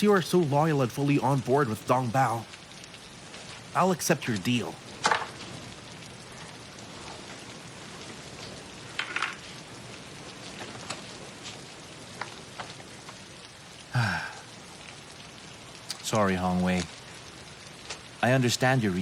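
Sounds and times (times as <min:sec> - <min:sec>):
steady rain falling: 0:00.0 - 0:19.0
water drips: 0:00.0 - 0:19.0.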